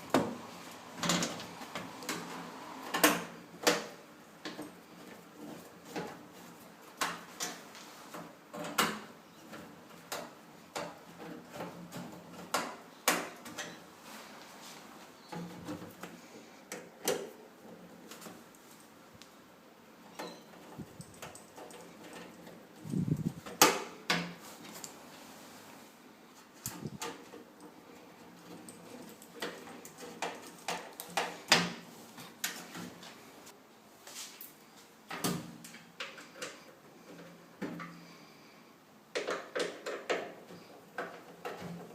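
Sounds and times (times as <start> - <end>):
light clicks and knocks of parts: 20.0 - 25.0, 34.4 - 38.2
clicks and knocks of tools: 35.1 - 38.0, 39.2 - 41.9.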